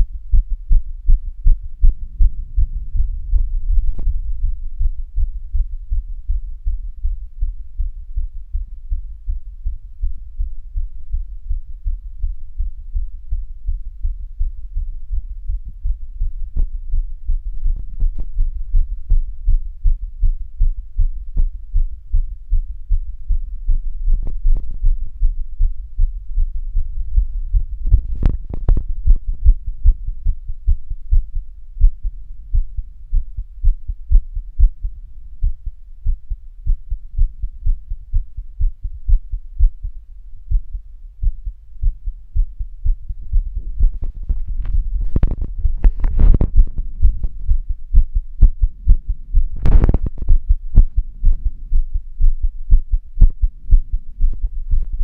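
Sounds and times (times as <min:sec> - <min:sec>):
fast heartbeat thumps: 0:00.0 - 0:55.0.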